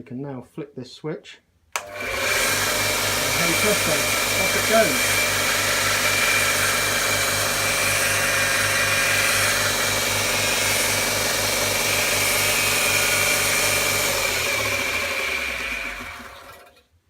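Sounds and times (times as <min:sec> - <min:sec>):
belt grinder motor hum: 0:01.8 - 0:16.8.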